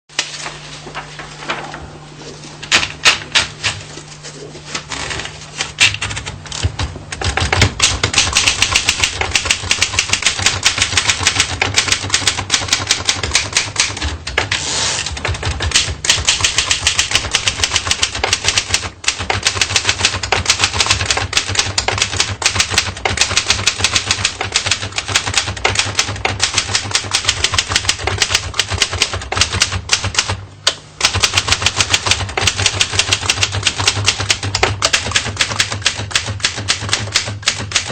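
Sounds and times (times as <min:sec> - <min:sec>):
typewriter key clatter: 0:05.8 - 0:14.5, 0:15.2 - 0:30.4, 0:31.0 - 0:37.9.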